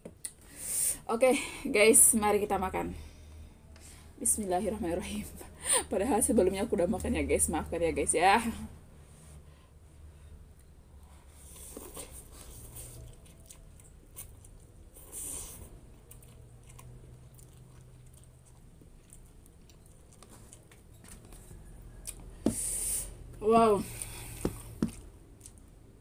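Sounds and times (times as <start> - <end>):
low steady hum: 0.0 - 26.0
person chewing noodles: 10.6 - 23.1, 23.9 - 26.0.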